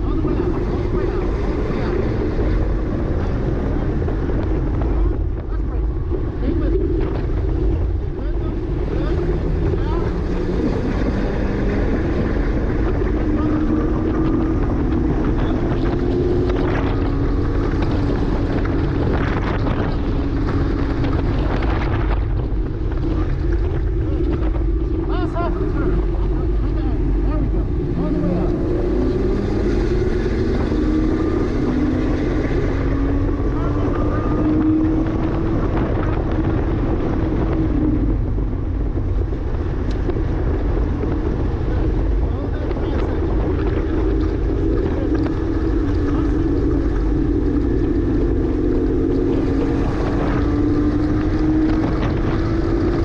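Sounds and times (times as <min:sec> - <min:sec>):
car engine running hard: 0:00.0 - 0:53.0
road rumble: 0:00.0 - 0:53.0
wind noise: 0:00.0 - 0:53.0.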